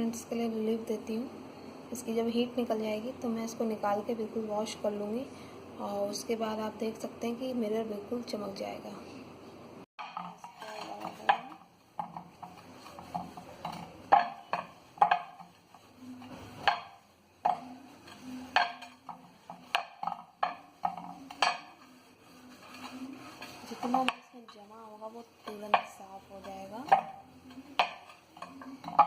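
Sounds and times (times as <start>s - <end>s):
dish clinking and knocking: 10.0s - 21.9s, 25.5s - 29.0s
dish being scrubbed: 10.0s - 29.0s.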